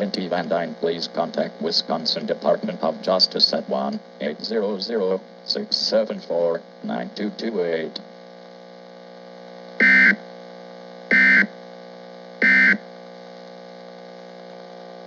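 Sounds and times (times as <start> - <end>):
steady electrical hum: 0.0 - 15.0
digital data tone bursts: 9.8 - 10.2, 11.1 - 11.5, 12.4 - 12.8.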